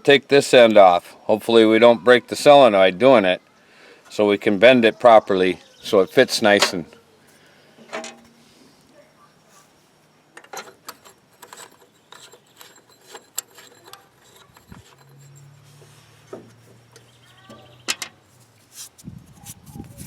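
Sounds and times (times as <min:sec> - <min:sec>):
hand tools tapping metal parts: 0:06.4 - 0:06.9, 0:07.8 - 0:08.3, 0:10.4 - 0:18.2.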